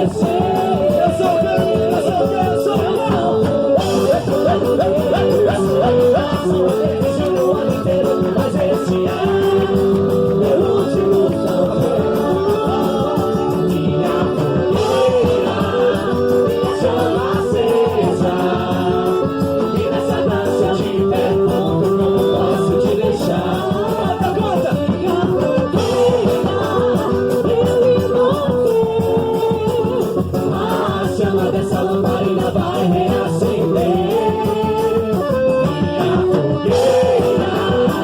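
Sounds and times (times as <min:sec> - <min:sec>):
folk dance song with singing: 0:00.0 - 0:38.0.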